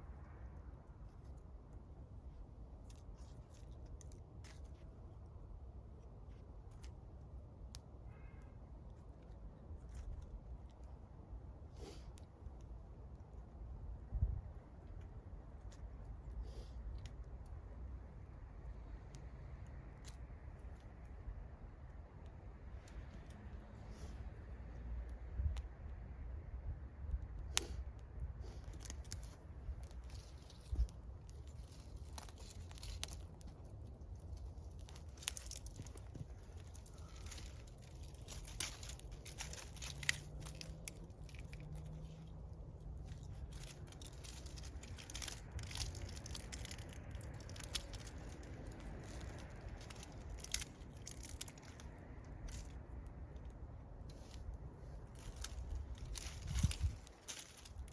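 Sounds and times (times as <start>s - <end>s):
low steady rumble: 9.7s - 57.9s
wood fire crackling: 28.4s - 52.8s.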